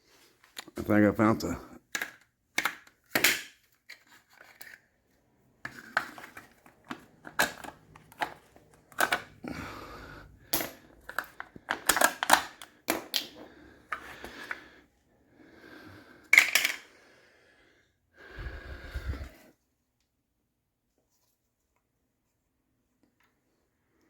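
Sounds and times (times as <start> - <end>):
metallic clicks of parts handled: 16.3 - 16.9.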